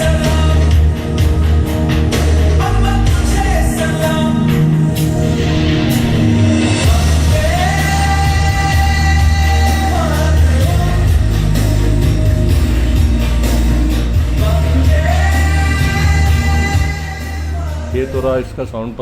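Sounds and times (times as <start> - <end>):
heavy bass and drums: 0.0 - 19.0
person singing long notes: 6.8 - 13.0, 13.8 - 18.1.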